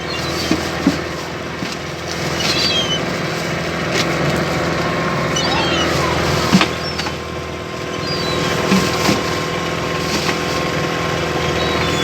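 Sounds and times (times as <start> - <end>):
gull calls: 0.0 - 0.7, 2.0 - 9.2, 11.3 - 12.0
boat engine running: 0.0 - 12.0.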